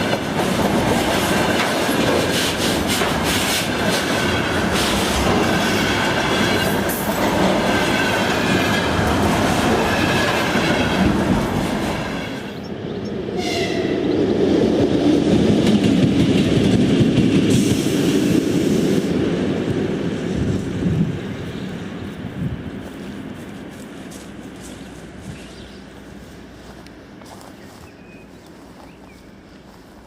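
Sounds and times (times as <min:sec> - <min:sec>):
train wheels clicking over rail joints: 0:00.0 - 0:12.3, 0:15.3 - 0:18.4.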